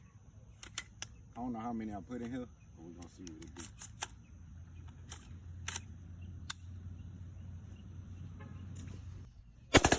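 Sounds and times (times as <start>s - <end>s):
sharp clicks: 0.6s - 1.2s, 4.8s - 6.7s.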